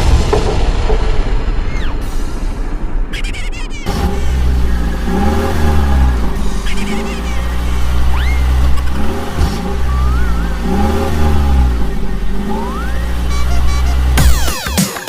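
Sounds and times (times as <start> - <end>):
vehicle engine drone: 0.0 - 14.5
rising whistle-like swoops: 9.7 - 13.4.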